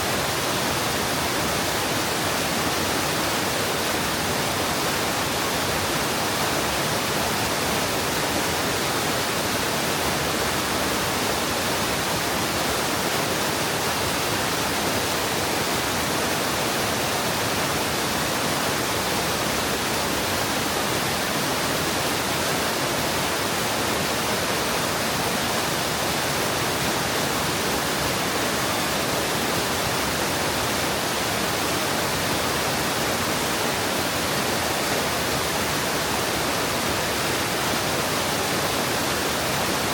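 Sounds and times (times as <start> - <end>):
stream water rushing over rocks: 0.0 - 39.9.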